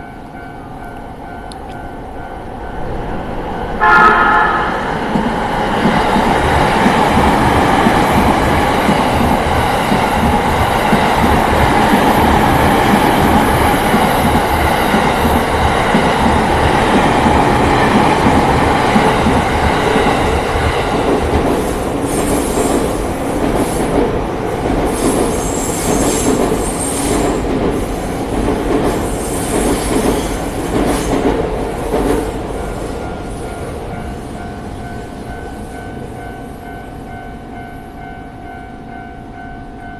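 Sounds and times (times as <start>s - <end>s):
crossing warning bell: 0.0s - 5.2s, 32.6s - 39.9s
train wheels rumbling and clattering: 4.4s - 36.6s.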